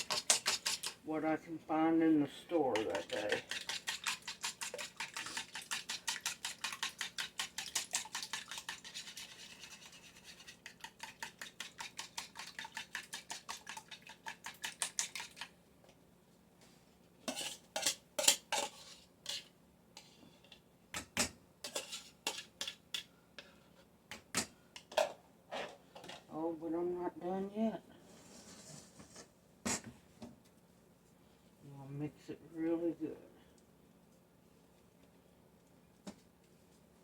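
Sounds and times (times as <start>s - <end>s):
eggs whisked in a bowl: 0.0s - 1.1s, 2.6s - 15.6s, 17.3s - 20.2s, 21.6s - 23.8s
utensil clinking on bowl: 2.7s - 9.2s.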